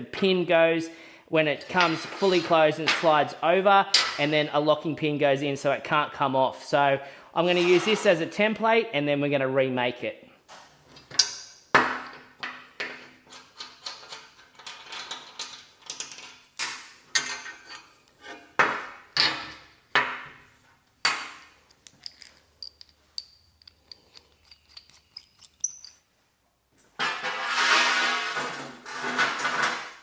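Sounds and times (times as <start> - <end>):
metal parts clanking on table: 1.6 - 3.2, 4.0 - 4.4, 21.1 - 26.0.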